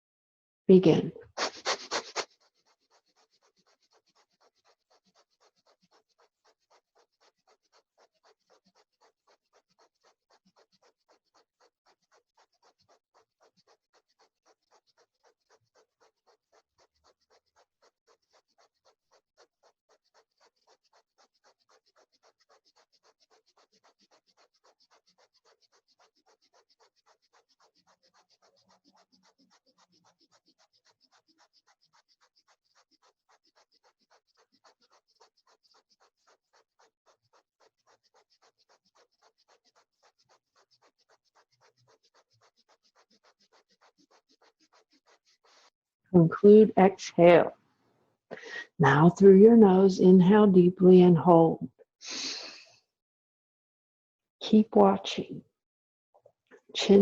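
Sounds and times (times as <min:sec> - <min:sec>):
rapid forceful nasal breathing: 0:01.2 - 0:11.4, 0:48.3 - 0:48.8, 0:52.0 - 0:52.8.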